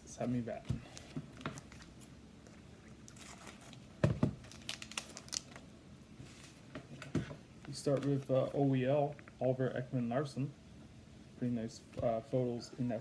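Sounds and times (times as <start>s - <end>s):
plastic wrapper crinkling: 3.1s - 5.7s.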